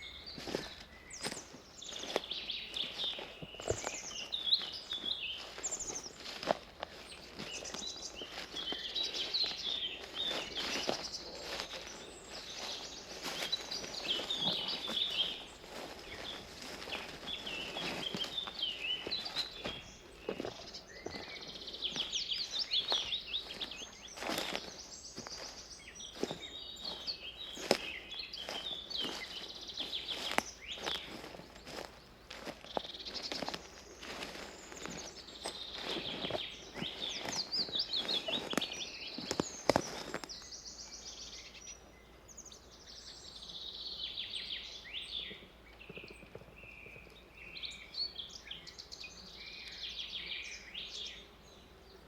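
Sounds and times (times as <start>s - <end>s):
footsteps on forest path: 0.0s - 41.6s
birds chirping: 0.0s - 52.0s.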